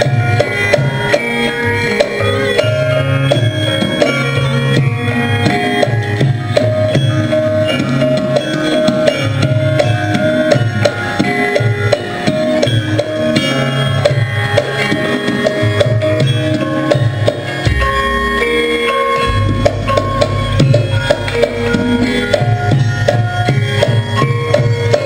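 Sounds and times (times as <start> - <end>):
drum beats: 0.0 - 25.0
metallophones ringing notes: 0.0 - 25.0.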